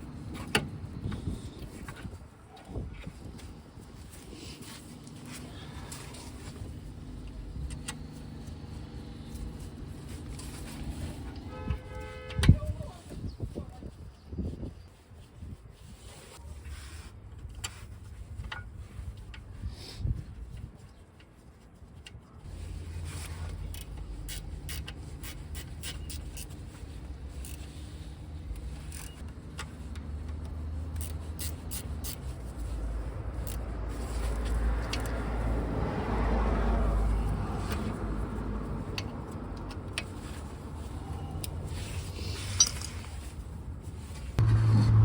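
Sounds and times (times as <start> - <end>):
low vehicle hum: 0.0 - 12.0, 22.4 - 45.0
vehicle passing: 33.2 - 39.5, 44.4 - 45.0.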